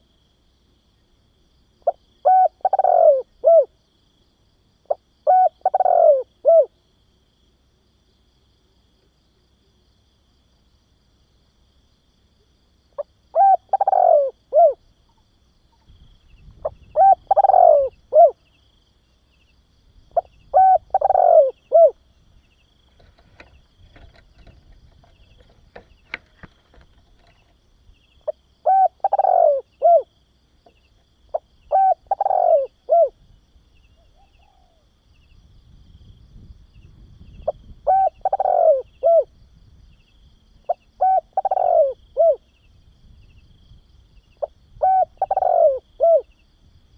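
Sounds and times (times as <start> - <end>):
dove cooing: 1.8 - 3.8, 4.9 - 6.8, 13.0 - 14.8, 16.6 - 18.5, 20.1 - 22.0, 28.2 - 30.1, 31.3 - 33.2, 34.0 - 34.9, 37.4 - 39.3, 40.7 - 42.5, 44.4 - 46.4.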